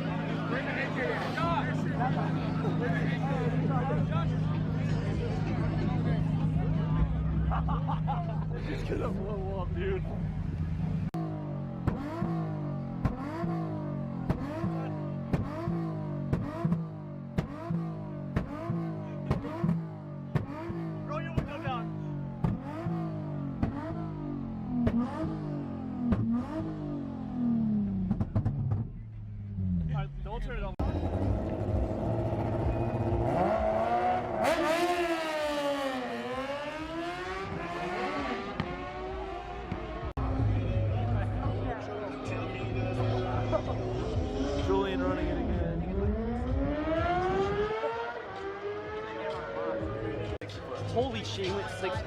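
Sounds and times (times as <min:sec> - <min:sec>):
car engine revving hard: 0:11.1 - 0:28.7, 0:30.9 - 0:41.0, 0:42.8 - 0:49.2.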